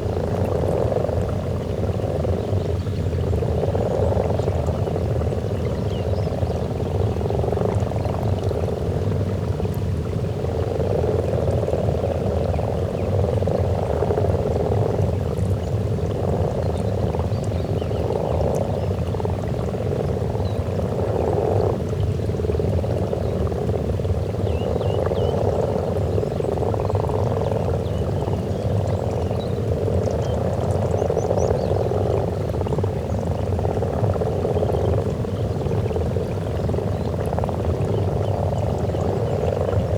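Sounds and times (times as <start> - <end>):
frogs croaking in chorus: 0.0 - 8.9, 10.5 - 39.9.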